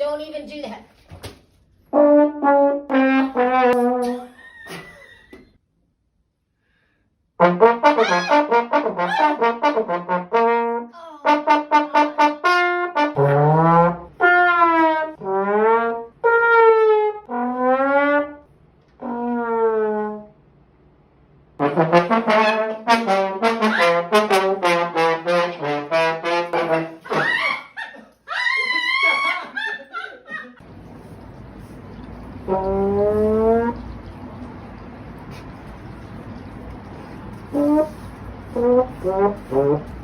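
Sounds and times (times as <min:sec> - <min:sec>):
brass horn notes: 0:01.9 - 0:04.3, 0:07.4 - 0:20.4, 0:21.6 - 0:27.3, 0:32.4 - 0:33.8, 0:37.4 - 0:40.0.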